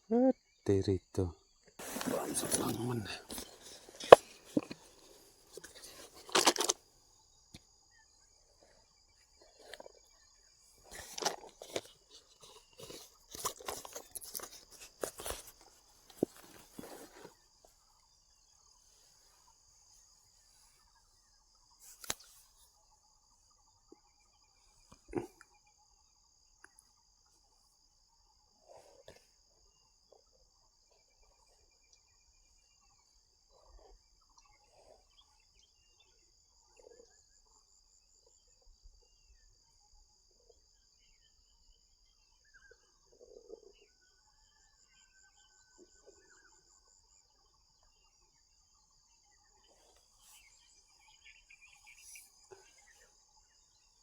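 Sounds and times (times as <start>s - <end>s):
insects chirring: 0.0s - 54.0s
clicks and handling rustles: 1.8s - 6.8s, 10.7s - 17.4s, 21.8s - 22.5s.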